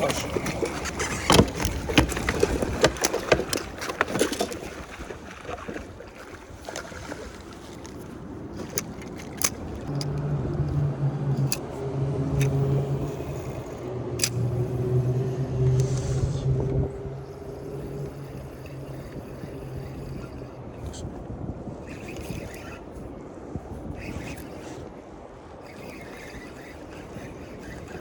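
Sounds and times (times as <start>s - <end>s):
low motor hum: 6.7s - 28.0s.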